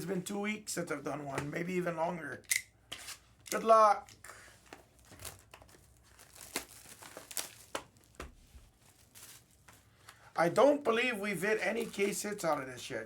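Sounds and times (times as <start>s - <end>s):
plastic packaging crinkling and tearing: 4.6s - 10.3s, 11.6s - 12.6s.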